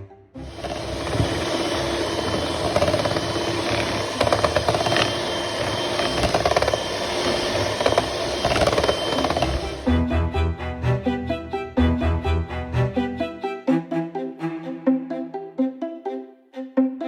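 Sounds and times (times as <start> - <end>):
electric blender grinding: 0.4 - 11.0.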